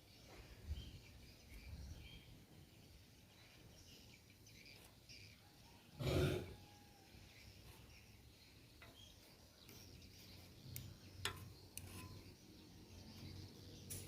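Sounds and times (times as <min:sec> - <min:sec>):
faint background hiss: 0:00.0 - 0:14.0
light sharp clicks of utensils: 0:08.7 - 0:12.6.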